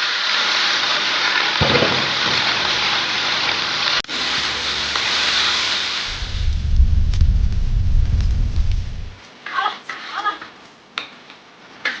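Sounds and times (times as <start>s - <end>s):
food sizzling in a pan: 0.0s - 9.1s.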